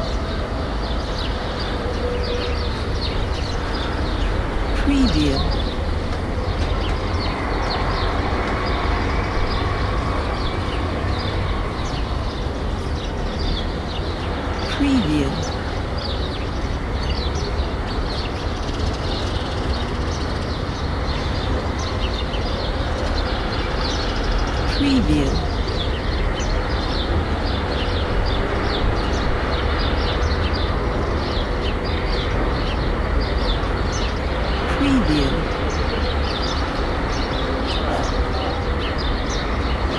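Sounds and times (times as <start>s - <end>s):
low rumble of traffic: 0.0s - 39.9s.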